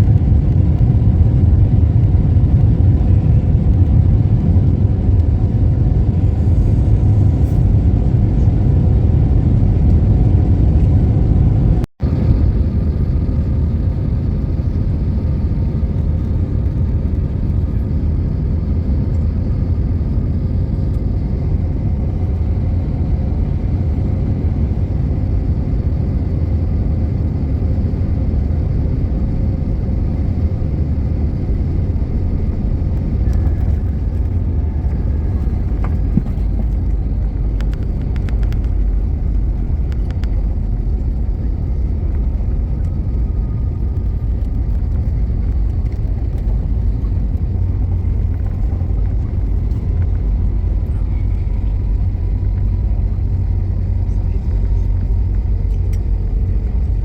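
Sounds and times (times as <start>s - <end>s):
car road and engine noise: 0.0s - 57.0s.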